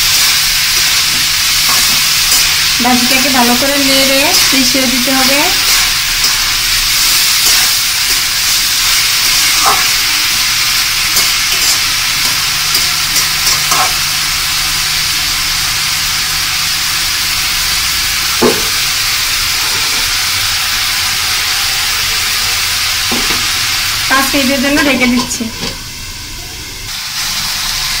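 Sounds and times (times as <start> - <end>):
vegetables sizzling in hot oil: 0.0 - 28.0
spatula scraping: 11.0 - 14.0.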